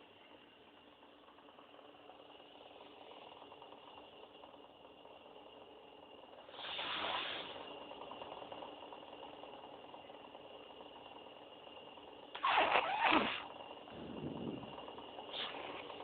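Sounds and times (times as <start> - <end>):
faint high whine: 10.0 - 16.0.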